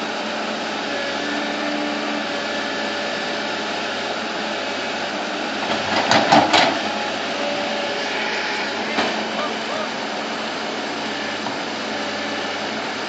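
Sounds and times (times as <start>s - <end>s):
bulldozer engine running: 0.0s - 13.0s.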